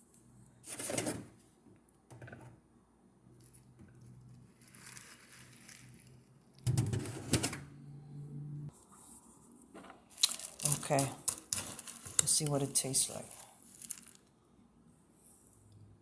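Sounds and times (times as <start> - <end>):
cereal packaging clicks and rustles: 3.4 - 6.6, 10.1 - 14.3.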